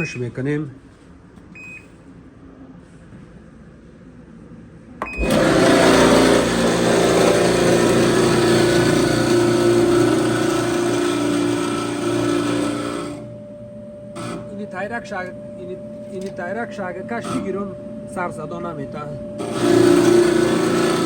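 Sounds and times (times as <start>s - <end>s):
short beep: 1.5s - 1.9s
clothes dryer running: 5.0s - 21.0s.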